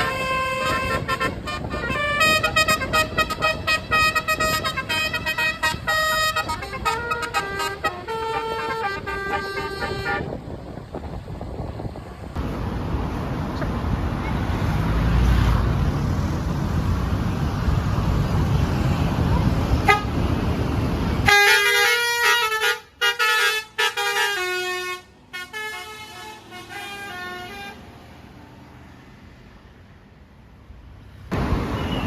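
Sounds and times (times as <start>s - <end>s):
multi-tone bus horn tune: 0.0s - 10.6s, 19.7s - 20.4s, 21.2s - 27.9s
bus engine rumble: 0.0s - 32.0s.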